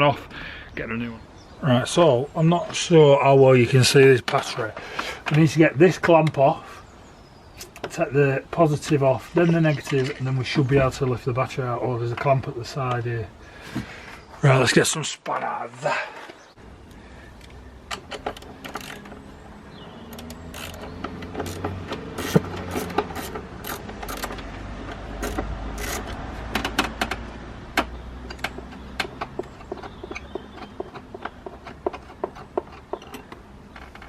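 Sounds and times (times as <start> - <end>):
metallic clicks and taps: 20.1 - 34.0.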